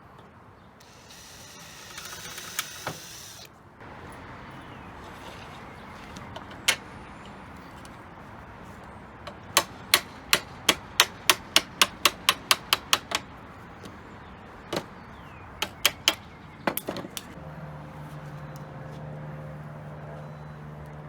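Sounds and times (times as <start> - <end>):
hammer tapping on metal: 9.3 - 14.0, 15.6 - 17.4.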